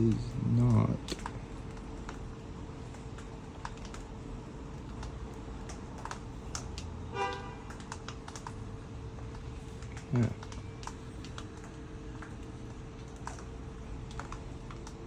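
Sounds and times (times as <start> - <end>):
horn-like tone: 7.2 - 7.6.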